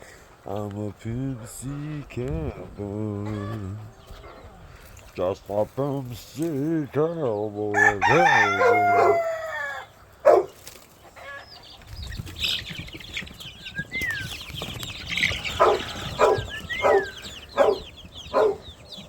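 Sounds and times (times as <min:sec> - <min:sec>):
birds chirping: 0:00.0 - 0:19.0
chickens clucking: 0:00.0 - 0:19.0
whistled bird calls: 0:12.1 - 0:19.0.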